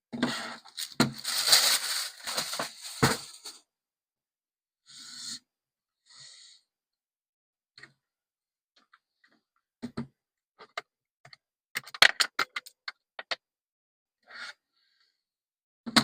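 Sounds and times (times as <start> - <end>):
box packaging rustling and scraping: 0.3 - 3.6.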